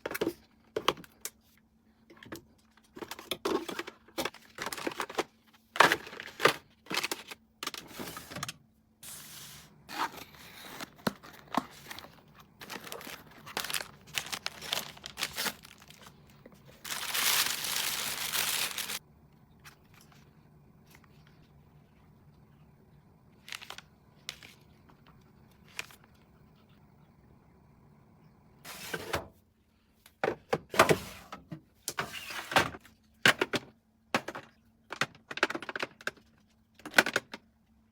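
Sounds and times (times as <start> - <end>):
plastic packaging crinkling: 10.0 - 19.0, 23.4 - 24.7.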